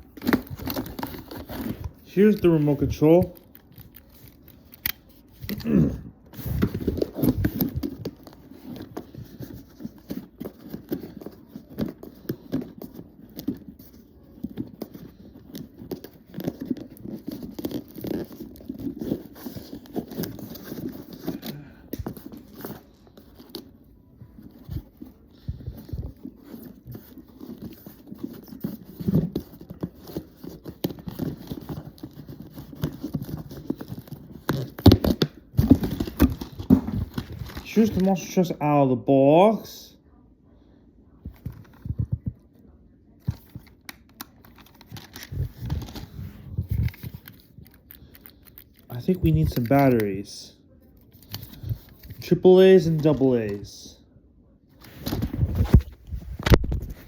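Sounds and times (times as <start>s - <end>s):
cardboard packaging rustling: 0.0s - 38.5s, 43.2s - 50.3s, 51.0s - 53.7s.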